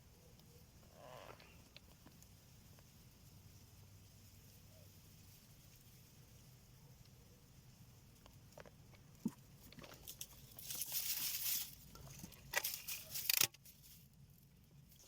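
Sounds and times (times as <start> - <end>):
rustling and crinkling: 8.0 - 15.0.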